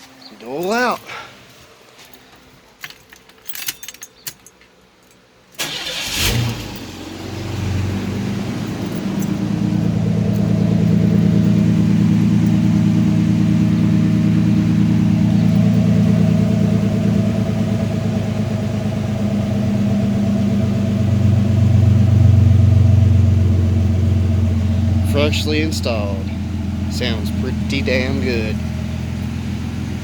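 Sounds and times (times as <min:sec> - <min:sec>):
truck engine exhaust note: 0:06.3 - 0:30.0.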